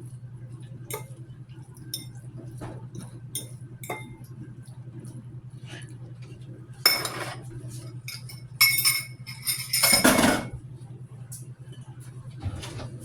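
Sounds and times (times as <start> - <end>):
steady low hum: 0.0 - 13.0
dishes and utensils clinking: 6.9 - 7.5, 8.1 - 10.6.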